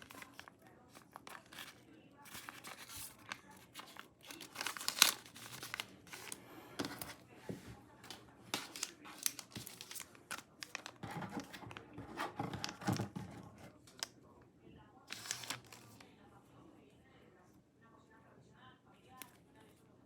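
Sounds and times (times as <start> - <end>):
packaging tearing and crinkling: 0.0 - 6.4, 8.6 - 11.8, 15.1 - 16.0.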